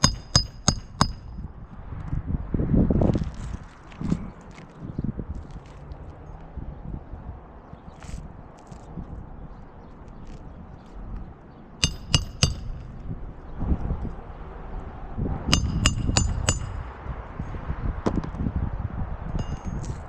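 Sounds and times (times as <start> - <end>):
hammer striking metal: 0.0 - 1.4, 11.8 - 12.9, 15.5 - 16.9, 19.4 - 20.0
wind rumble on microphone: 0.0 - 20.0.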